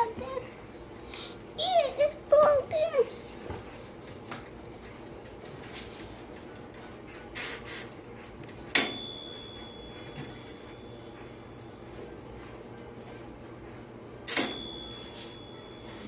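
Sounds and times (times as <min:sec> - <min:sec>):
dial timer ticking: 0:00.0 - 0:11.9
metallic click ringing: 0:08.7 - 0:10.8.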